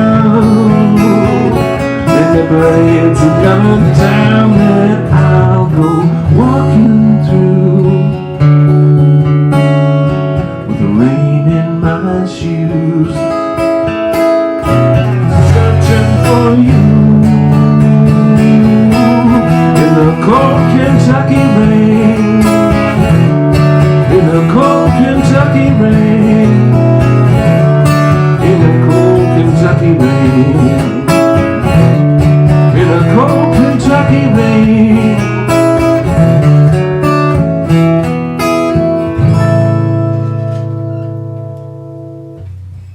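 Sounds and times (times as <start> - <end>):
guitar-led country music: 0.0 - 42.9.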